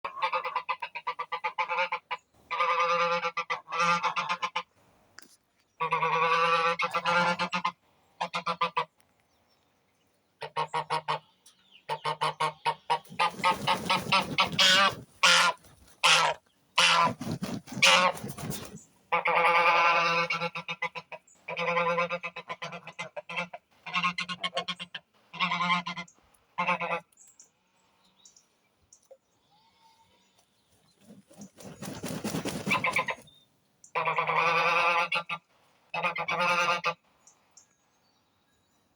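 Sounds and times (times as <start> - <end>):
geese honking: 0.0 - 4.7, 5.8 - 8.9, 10.4 - 27.1, 32.5 - 33.3, 33.9 - 37.0.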